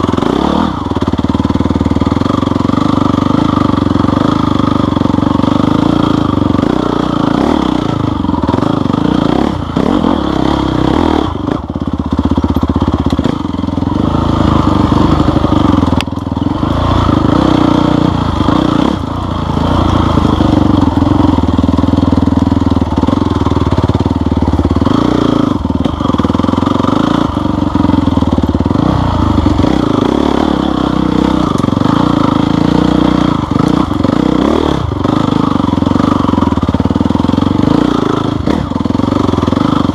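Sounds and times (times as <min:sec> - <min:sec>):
off-road vehicle engine revving: 0:00.0 - 0:39.9.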